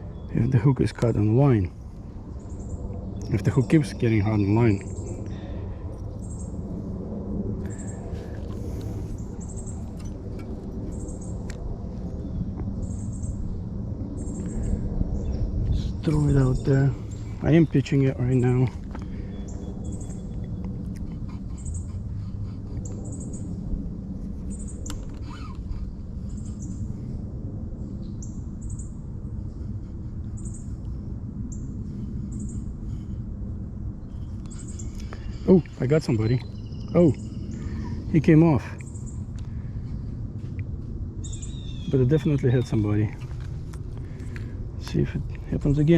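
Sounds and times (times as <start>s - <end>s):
low rumble: 0.0s - 45.9s
bird chirping: 34.0s - 38.2s, 41.2s - 44.4s
small bird high chirps: 41.2s - 42.8s.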